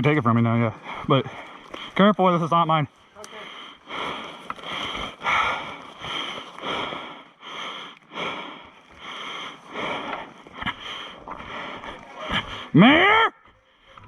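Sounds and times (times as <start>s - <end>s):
person breathing hard: 3.3s - 12.8s.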